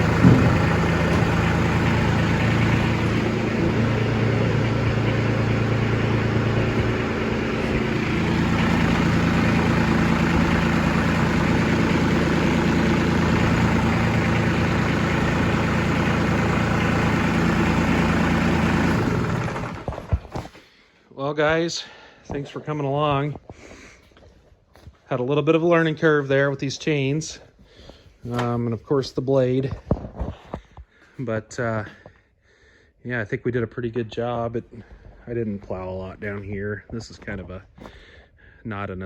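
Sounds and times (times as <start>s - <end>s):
tractor diesel engine running: 0.0s - 20.5s.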